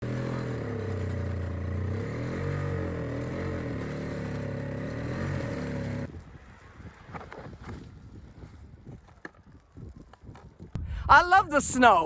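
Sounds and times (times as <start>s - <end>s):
snowblower engine running: 0.0s - 6.1s.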